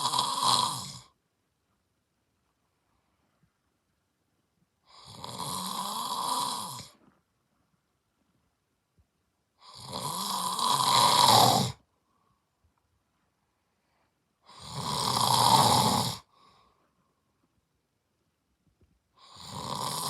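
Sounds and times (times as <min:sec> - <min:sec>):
man snoring: 0:00.0 - 0:01.2, 0:04.9 - 0:07.0, 0:09.6 - 0:11.8, 0:14.4 - 0:16.3, 0:19.2 - 0:20.0.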